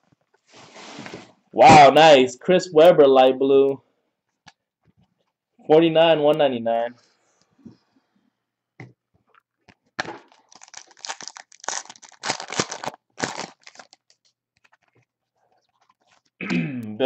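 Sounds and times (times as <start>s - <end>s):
foil wrapper tearing and crinkling: 10.0s - 15.0s.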